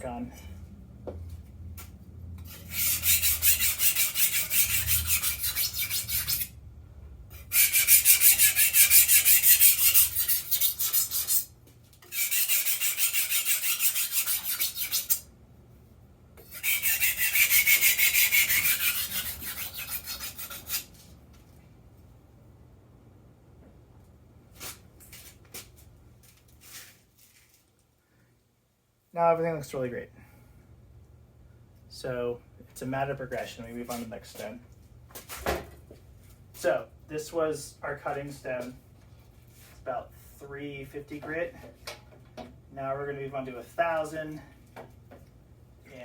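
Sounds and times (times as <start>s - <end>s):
knife scraping on whetstone: 12.1s - 15.2s, 16.5s - 20.9s.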